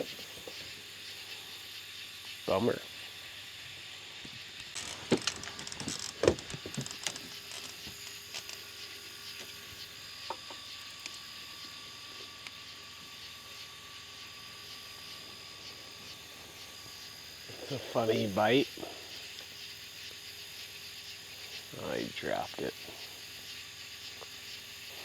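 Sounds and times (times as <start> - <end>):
fishing gear clicks and knocks: 4.6 - 8.7.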